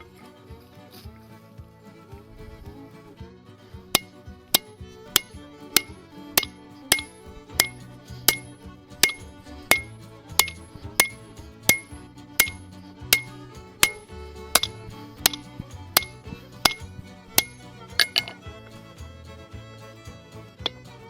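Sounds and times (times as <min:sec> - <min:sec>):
background music: 0:00.0 - 0:21.0
hammer striking steel on anvil: 0:03.9 - 0:18.4.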